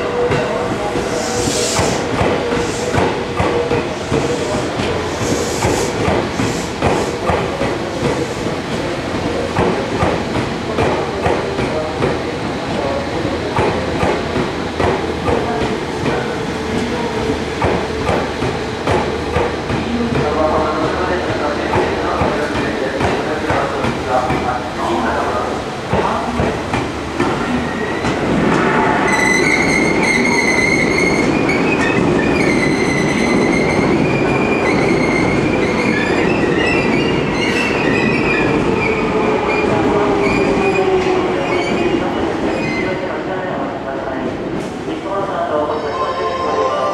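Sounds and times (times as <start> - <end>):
electric train rumbling: 0.0 - 46.9
train wheels clacking over rail joints: 1.8 - 12.3, 16.8 - 24.6.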